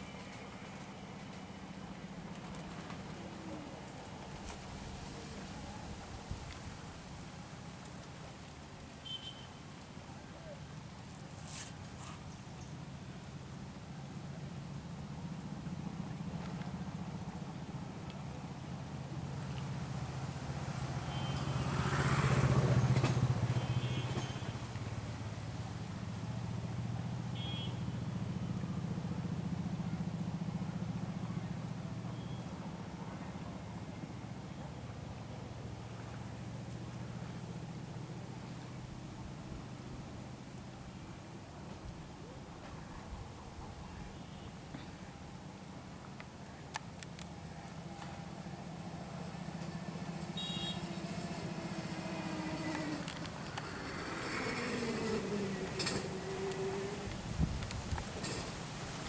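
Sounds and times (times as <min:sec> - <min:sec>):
small engine running: 0:49.2 - 0:57.4.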